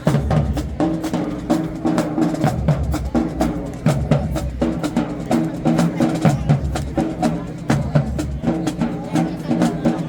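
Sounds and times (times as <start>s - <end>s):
drumline hits: 0.0s - 10.0s
marching band playing: 0.0s - 10.0s.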